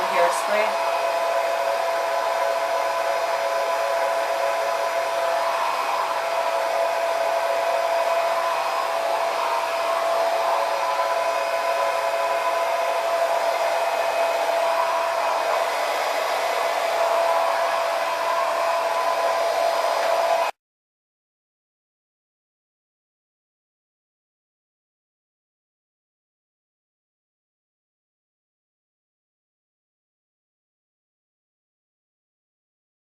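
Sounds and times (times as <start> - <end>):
blow dryer running: 0.0 - 20.6.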